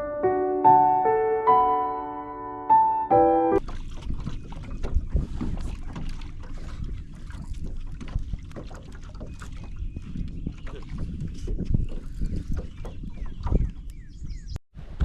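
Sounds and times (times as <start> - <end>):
piano tune: 0.0 - 3.6
small knocks and splashes: 3.6 - 14.0
water lapping against boat hull: 3.6 - 15.0
wind buffeting microphone: 3.6 - 15.0.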